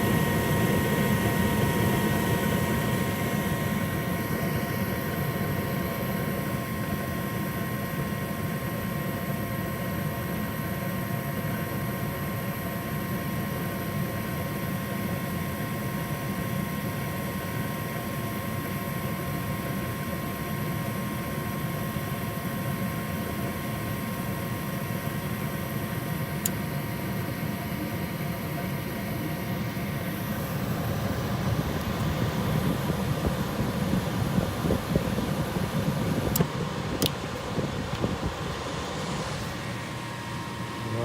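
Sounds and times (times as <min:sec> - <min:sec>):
faint steady hum: 0:00.0 - 0:41.0
furnace burner and blower rumble: 0:00.0 - 0:41.0
sharp click: 0:36.3 - 0:37.2.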